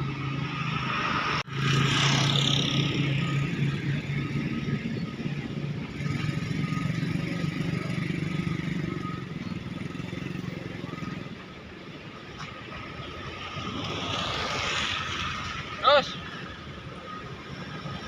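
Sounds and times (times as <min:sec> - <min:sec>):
heavy equipment diesel engine: 0:01.4 - 0:18.0.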